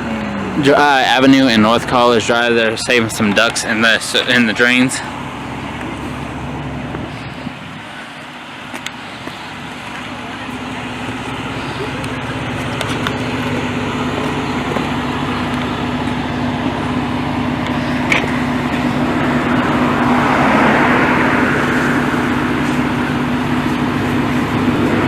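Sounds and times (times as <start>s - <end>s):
large diesel engine humming: 0.0s - 25.0s
rushing noise: 9.0s - 25.0s.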